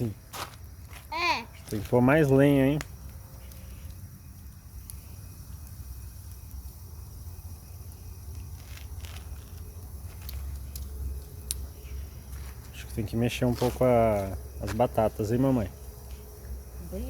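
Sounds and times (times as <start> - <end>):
bonfire crackling: 0.0 - 17.0
faint hiss: 0.0 - 17.0
sharp fire pops: 1.9 - 11.8.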